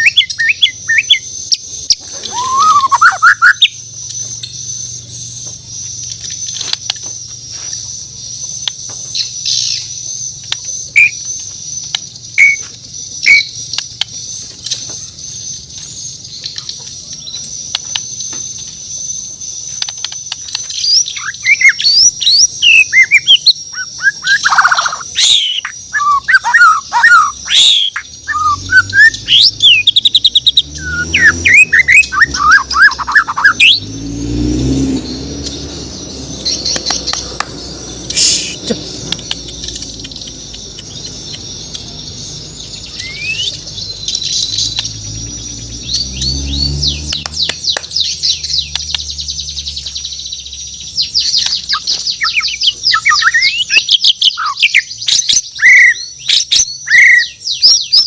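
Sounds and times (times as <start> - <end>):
bird singing whistled phrases: 0.0 - 4.5, 19.8 - 33.9, 38.1 - 50.3, 51.0 - 58.0.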